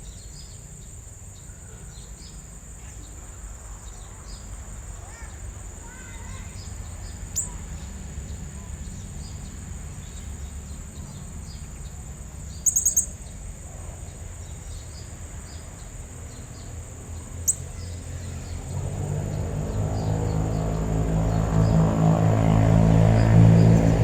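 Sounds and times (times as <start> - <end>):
high insect drone: 0.0 - 24.0
low engine drone: 18.0 - 24.0.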